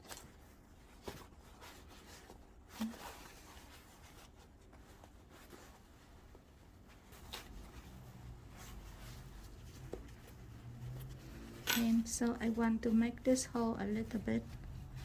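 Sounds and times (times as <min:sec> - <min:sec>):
fabric bag rubbing and scratching: 0:00.4 - 0:15.0.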